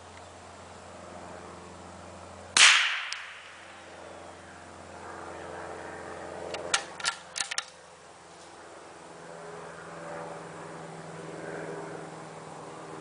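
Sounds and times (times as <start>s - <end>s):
rifle shot: 2.6s - 3.6s
rifle bolt clicking: 6.5s - 7.7s.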